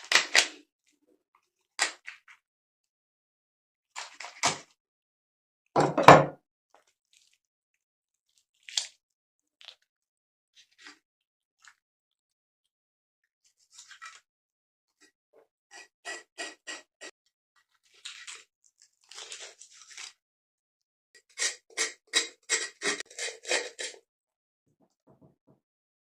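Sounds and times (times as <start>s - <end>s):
knife scraping fish: 15.7s - 17.1s, 21.2s - 24.0s.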